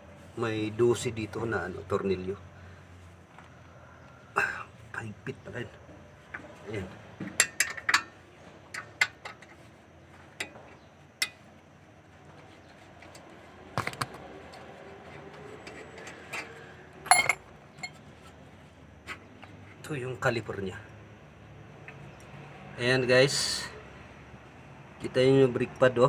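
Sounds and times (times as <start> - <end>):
metallic clinks of wrench and bolts: 17.1 - 18.0.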